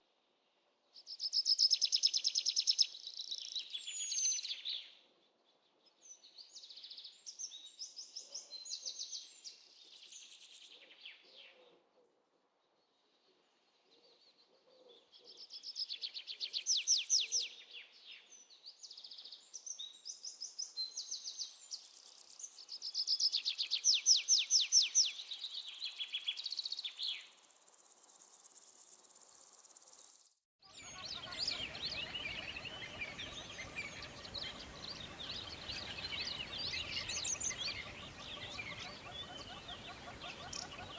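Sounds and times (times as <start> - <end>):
songbird trilling: 30.7 - 40.9.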